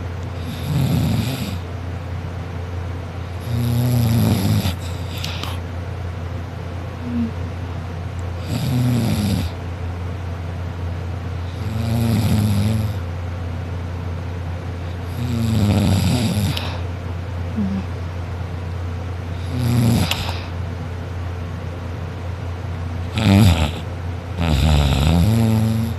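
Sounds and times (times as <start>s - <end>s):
steady low hum: 0.0s - 25.9s
person snoring: 0.4s - 1.6s, 3.4s - 5.6s, 7.0s - 7.4s, 8.4s - 9.6s, 11.5s - 13.0s, 15.1s - 16.8s, 17.6s - 17.9s, 19.4s - 20.5s, 23.1s - 25.9s.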